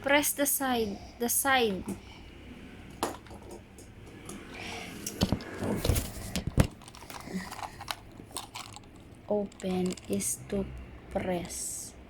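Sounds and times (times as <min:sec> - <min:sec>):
plastic pieces rustling: 0:06.0 - 0:10.3.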